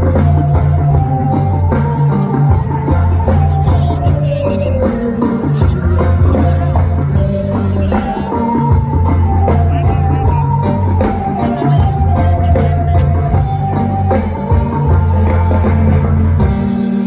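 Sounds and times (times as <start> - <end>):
bass line: 0.0 - 17.0
drum kit beat: 0.0 - 17.0
held melody line: 0.0 - 17.0.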